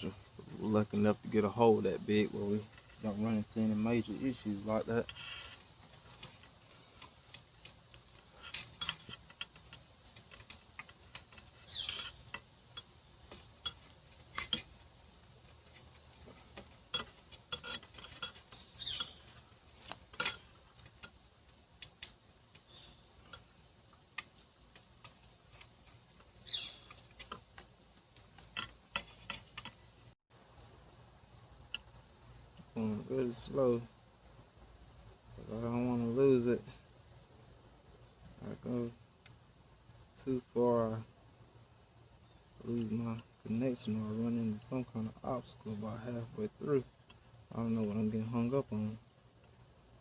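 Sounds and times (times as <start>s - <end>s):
small clicks and taps: 5.1s - 30.1s.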